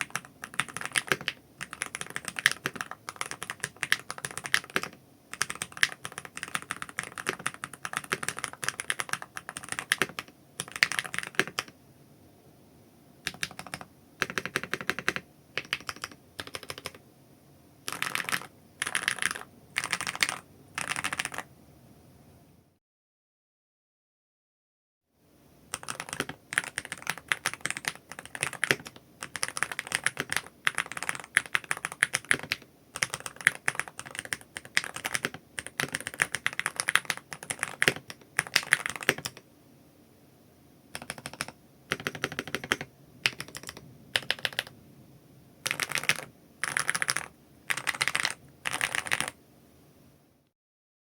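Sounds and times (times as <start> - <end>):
fast keyboard typing: 0.0 - 11.7, 13.3 - 17.0, 17.9 - 21.5, 25.7 - 39.4, 40.9 - 44.7, 45.6 - 49.4.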